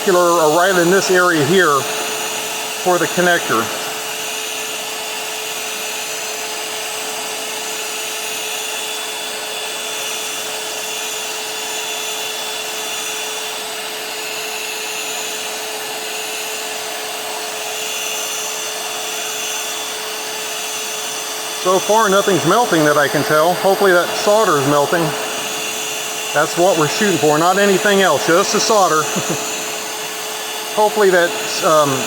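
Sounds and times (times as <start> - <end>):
heat gun fan blowing: 0.0 - 32.0
constant hum: 21.3 - 32.0.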